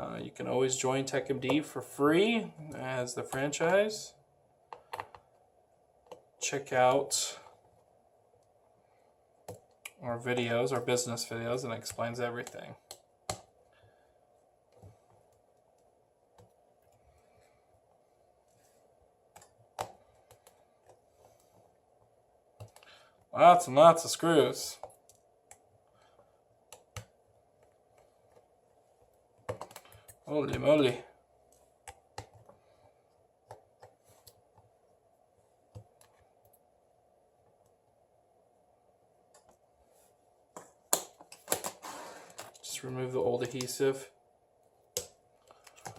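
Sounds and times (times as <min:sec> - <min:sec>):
faint steady hum: 0:00.0 - 0:45.9.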